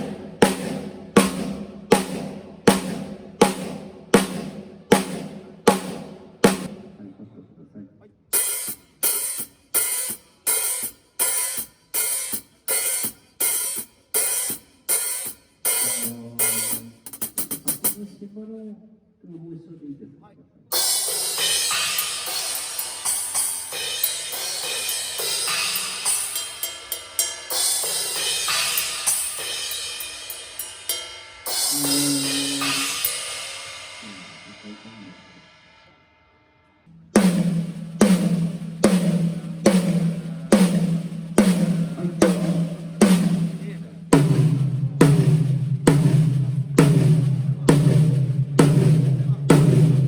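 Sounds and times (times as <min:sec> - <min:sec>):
drum hits: 0:00.0 - 0:07.0, 0:15.2 - 0:18.0, 0:20.8 - 0:30.6, 0:31.5 - 0:34.2, 0:37.1 - 0:50.0
tom-toms struck: 0:00.0 - 0:07.0, 0:37.2 - 0:50.0
cymbals crashing: 0:20.8 - 0:35.9.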